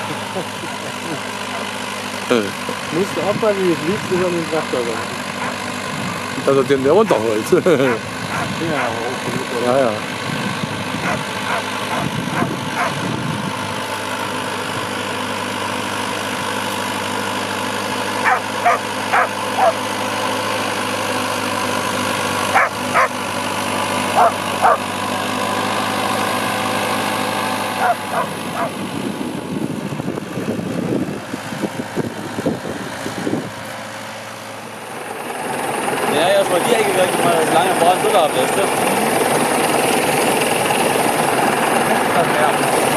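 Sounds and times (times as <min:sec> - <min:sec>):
tractor diesel engine running: 0:00.0 - 0:42.9
dog barking: 0:05.0 - 0:05.6, 0:08.3 - 0:08.9, 0:11.0 - 0:13.0, 0:18.2 - 0:19.8, 0:22.6 - 0:23.2, 0:24.2 - 0:24.8, 0:27.8 - 0:28.7.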